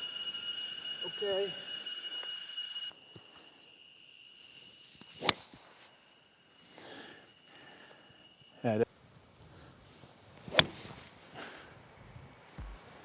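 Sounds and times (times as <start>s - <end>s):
insects droning: 0.0s - 13.0s
golf club striking ball: 10.5s - 11.0s.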